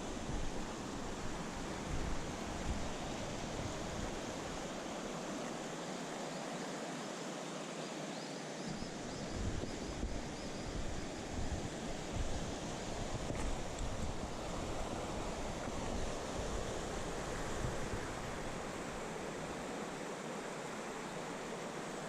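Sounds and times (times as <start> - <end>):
stream water rushing: 0.0 - 22.0
wind buffeting microphone: 9.3 - 18.6.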